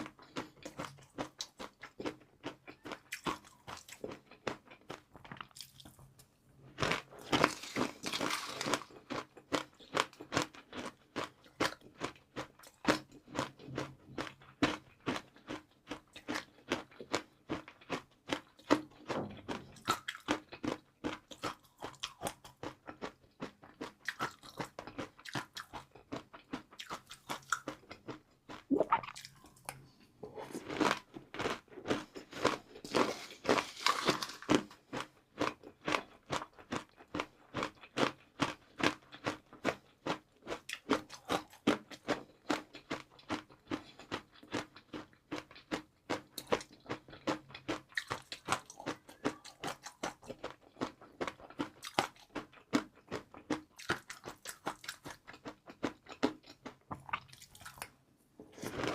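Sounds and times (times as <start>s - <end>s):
crunching crispy noodles: 6.8s - 13.5s, 30.6s - 39.4s.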